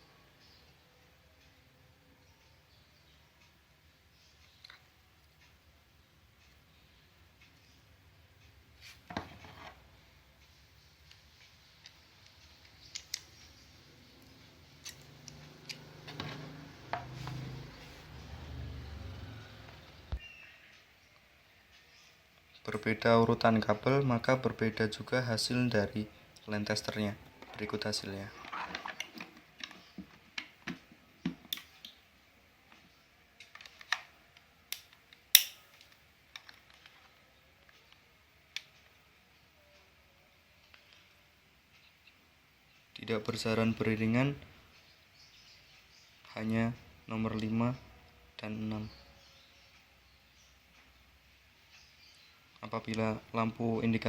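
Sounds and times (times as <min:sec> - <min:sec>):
crimping tool snipping and clicking: 0:34.7 - 0:35.6.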